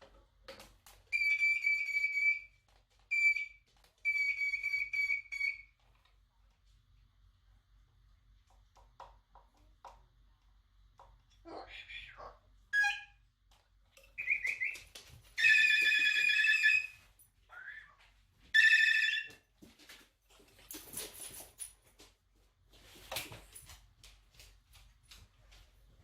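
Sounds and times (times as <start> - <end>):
cockatoo mimicking telephone ring: 15.4 - 16.9, 18.6 - 19.3.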